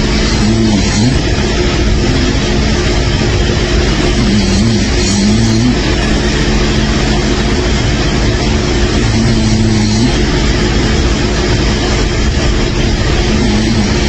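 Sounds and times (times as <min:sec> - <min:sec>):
person snoring: 0:00.0 - 0:01.7, 0:03.9 - 0:07.2, 0:08.9 - 0:10.6, 0:13.0 - 0:14.0
steady loud rushing noise: 0:00.0 - 0:14.0.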